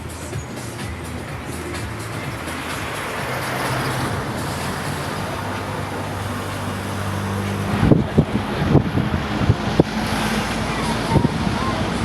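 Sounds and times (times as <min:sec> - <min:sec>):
road noise: 0:00.0 - 0:12.0
vehicle engine hum: 0:00.0 - 0:12.0.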